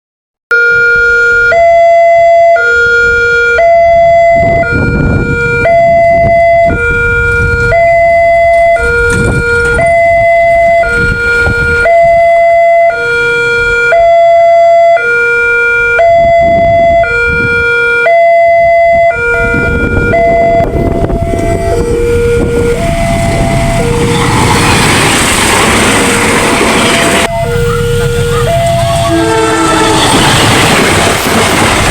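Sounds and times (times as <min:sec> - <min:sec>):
two-tone level crossing siren: 0:00.5 - 0:31.9
low rumbling noise: 0:18.8 - 0:31.9.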